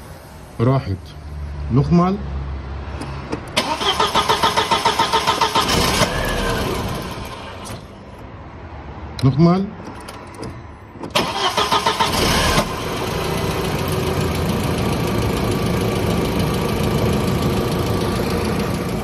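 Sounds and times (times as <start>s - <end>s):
starter cranking engine: 3.6s - 7.4s, 11.1s - 12.8s
car engine running: 12.3s - 19.0s.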